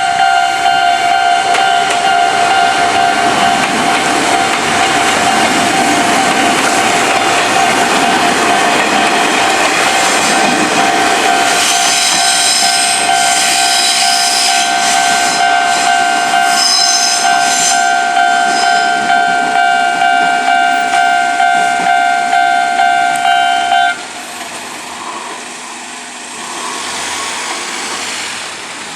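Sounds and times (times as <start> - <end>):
level crossing bell ringing: 0.0 - 6.2, 17.2 - 24.0
train wheel noise: 0.0 - 28.9.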